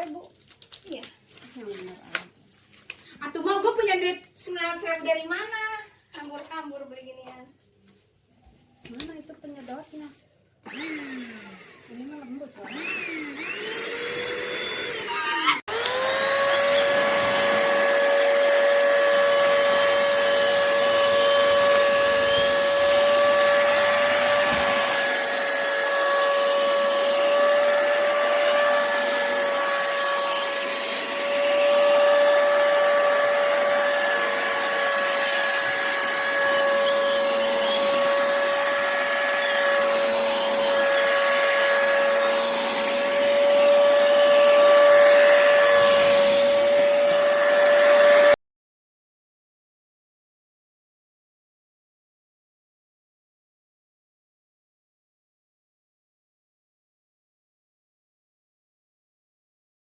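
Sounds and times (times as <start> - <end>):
vacuum cleaner running: 10.6 - 48.4.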